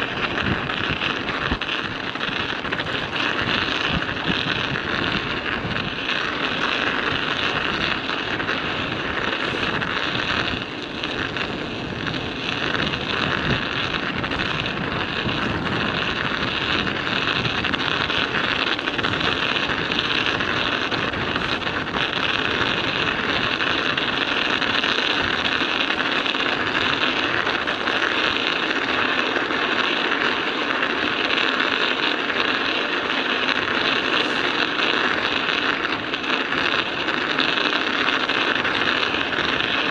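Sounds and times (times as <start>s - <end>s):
wind buffeting microphone: 0.0s - 30.1s, 38.1s - 39.9s
studded tyres crunching on ice: 0.0s - 39.9s.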